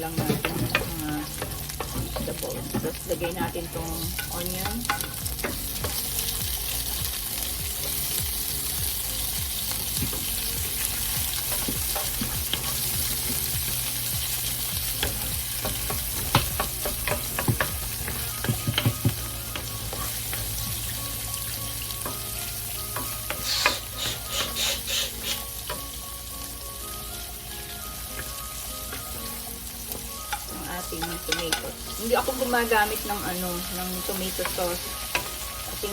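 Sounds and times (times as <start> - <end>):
garlic and onion sizzling in oil: 0.0 - 35.9
utensil scraping a pan: 23.0 - 25.6.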